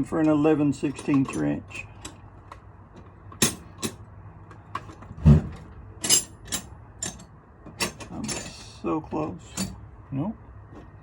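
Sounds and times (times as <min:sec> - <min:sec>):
heavy thud: 0:05.2 - 0:05.6.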